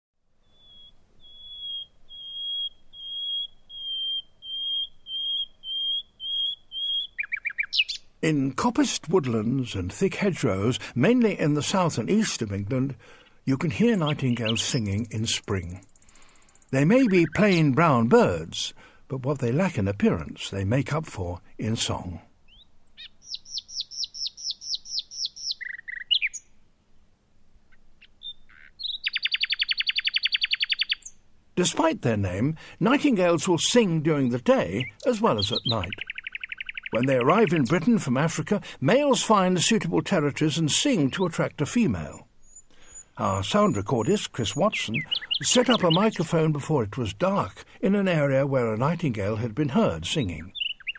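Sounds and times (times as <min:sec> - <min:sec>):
nightingale singing: 0:00.3 - 0:20.4, 0:21.6 - 0:26.6, 0:27.7 - 0:50.9
nightingale whistling notes: 0:00.4 - 0:08.0, 0:28.2 - 0:31.2, 0:44.5 - 0:46.1.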